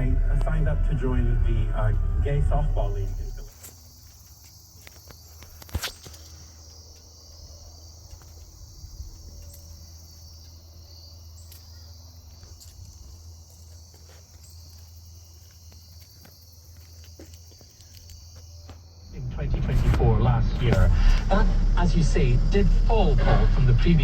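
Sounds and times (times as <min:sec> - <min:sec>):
low hum: 0:00.0 - 0:03.6, 0:19.1 - 0:24.0
high-pitched insect chorus: 0:00.0 - 0:24.0.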